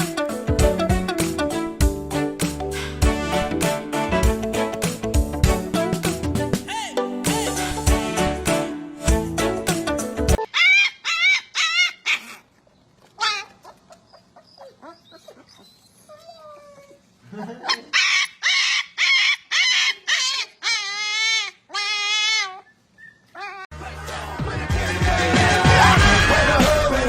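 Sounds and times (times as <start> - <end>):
dog whining and yipping: 10.4 - 12.4, 13.2 - 17.0, 17.7 - 23.7.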